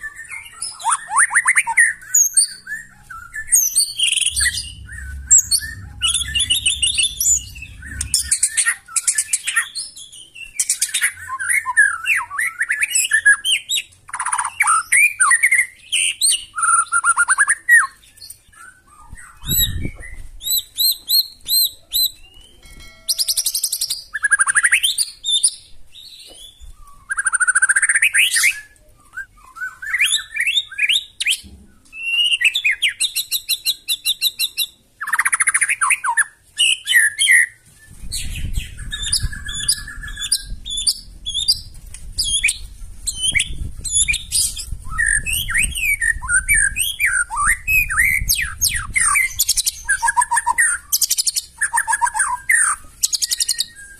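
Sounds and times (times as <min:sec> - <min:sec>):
bird singing trills and whistles: 0:00.0 - 0:53.9
low rumble: 0:03.0 - 0:09.0.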